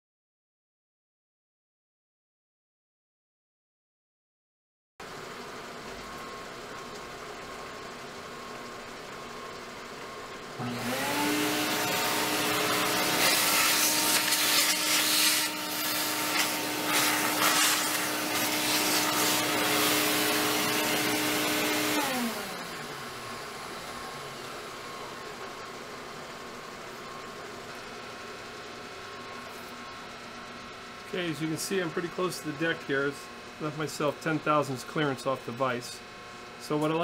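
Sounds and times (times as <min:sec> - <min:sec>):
steady machine hum: 0:05.0 - 0:37.0
vacuum cleaner running: 0:07.2 - 0:36.0.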